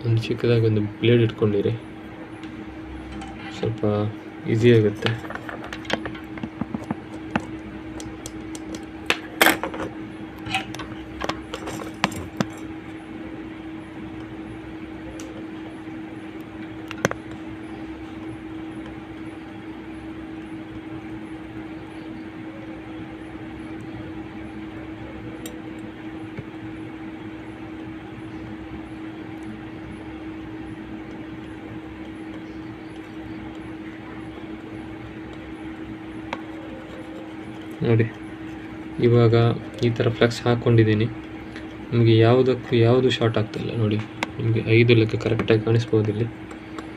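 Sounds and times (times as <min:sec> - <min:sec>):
steady hum: 0:00.0 - 0:46.9
metal tools tapping circuit board: 0:04.9 - 0:12.7.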